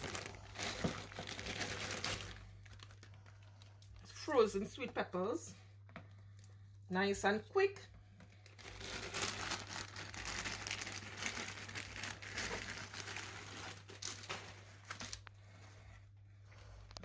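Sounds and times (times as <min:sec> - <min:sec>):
packaging crinkling and rustling: 0:00.0 - 0:04.0, 0:08.2 - 0:15.6.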